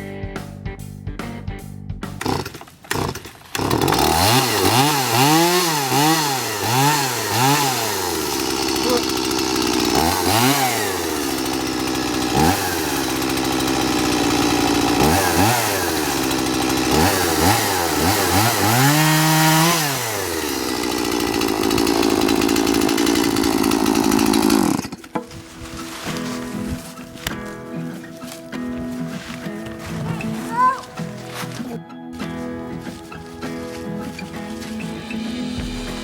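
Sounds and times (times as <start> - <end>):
chainsaw revving: 2.2 - 25.2, 35.5 - 36.0.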